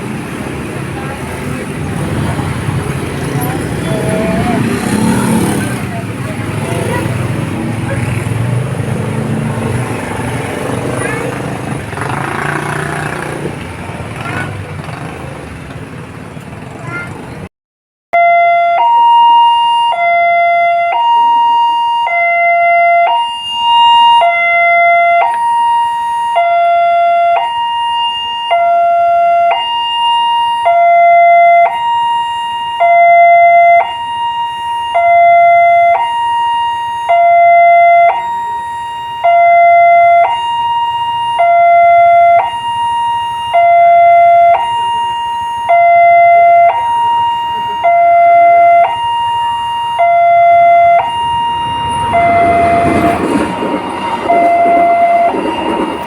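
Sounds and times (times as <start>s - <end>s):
level crossing two-tone alarm: 18.2s - 56.0s.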